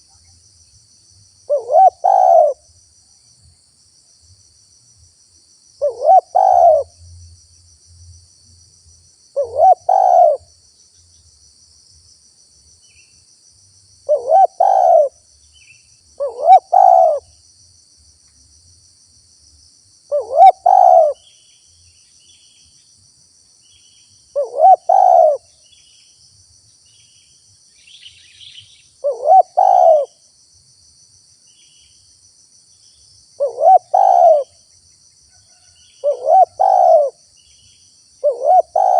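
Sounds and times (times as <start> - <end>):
dove cooing: 1.5 - 2.6, 5.8 - 7.0, 9.4 - 10.5, 14.1 - 15.2, 16.2 - 17.2, 20.1 - 21.2, 24.4 - 25.5, 29.0 - 30.2, 33.4 - 34.6, 35.6 - 37.2, 38.2 - 38.9.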